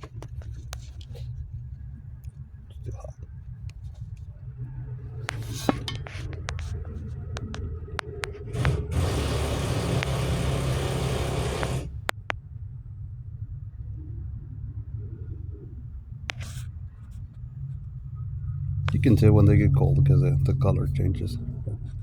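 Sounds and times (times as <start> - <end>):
loud steady hiss: 8.6 - 12.1
low rumble: 17.2 - 22.0.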